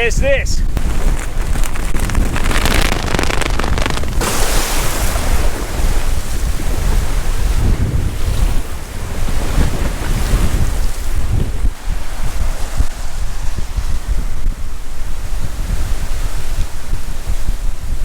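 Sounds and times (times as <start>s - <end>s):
wind buffeting microphone: 0.0s - 18.0s
heavy surf rushing onto beach: 0.8s - 13.2s.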